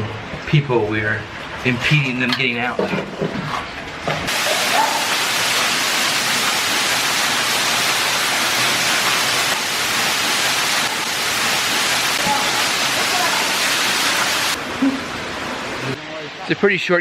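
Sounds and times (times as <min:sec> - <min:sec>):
waterfall rushing in a cave: 0:04.3 - 0:16.9.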